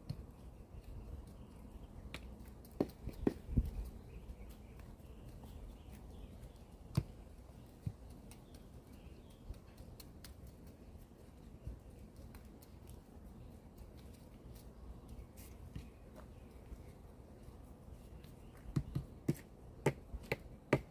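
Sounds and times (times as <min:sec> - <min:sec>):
hands and tools working soil: 0:00.0 - 0:20.9.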